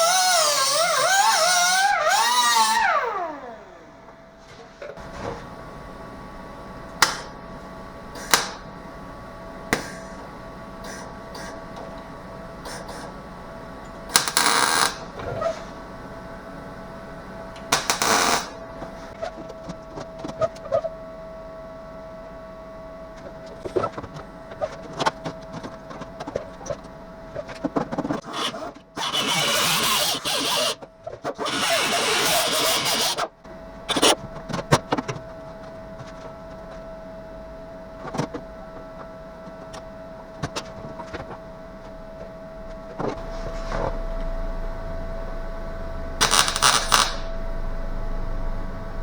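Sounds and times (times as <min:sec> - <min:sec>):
steady hum: 0:02.6 - 0:49.0
welder crackling: 0:14.1 - 0:15.2, 0:17.7 - 0:18.6, 0:46.2 - 0:47.4.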